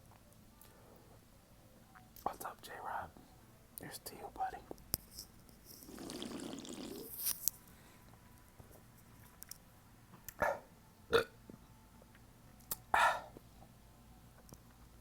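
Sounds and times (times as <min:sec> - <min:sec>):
man burping: 0:11.1 - 0:11.3.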